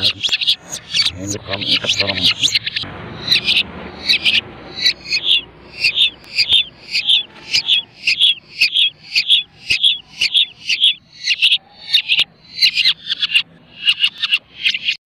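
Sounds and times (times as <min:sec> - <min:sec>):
shrike calling harsh notes: 0:00.0 - 0:15.0.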